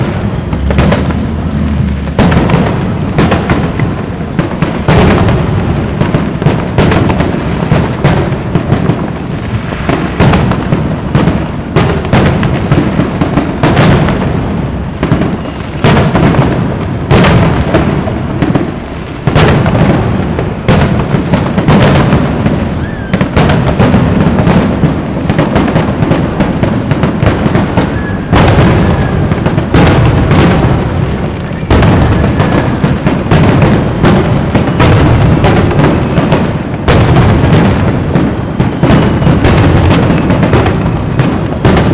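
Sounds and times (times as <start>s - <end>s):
deep rolling rumble: 0.0s - 4.3s
fireworks booming: 0.0s - 41.9s
sharp fireworks cracks: 0.0s - 41.9s.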